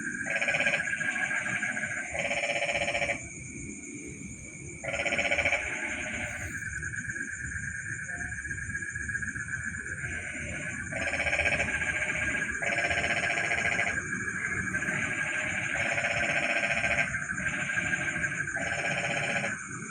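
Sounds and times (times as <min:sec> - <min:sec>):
high-pitched insect buzz: 0:00.0 - 0:19.9
fast pulsing trill calls: 0:00.2 - 0:03.2, 0:04.2 - 0:06.9, 0:09.9 - 0:14.0, 0:14.7 - 0:19.9.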